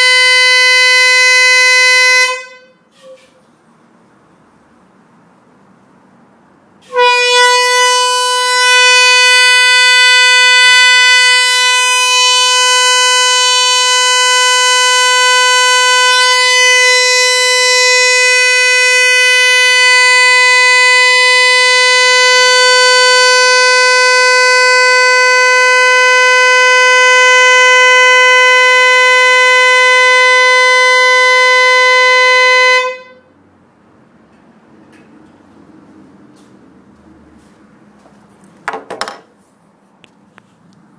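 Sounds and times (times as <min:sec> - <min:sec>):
long steady horn honk: 0:00.0 - 0:03.4, 0:06.8 - 0:33.5.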